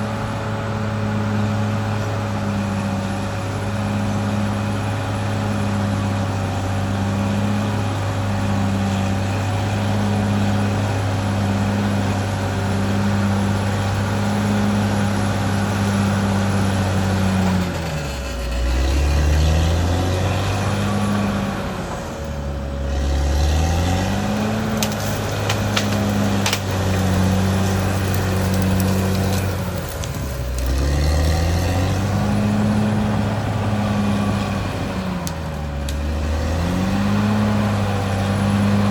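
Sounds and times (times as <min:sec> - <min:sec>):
bulldozer diesel engine running: 0:00.0 - 0:38.9.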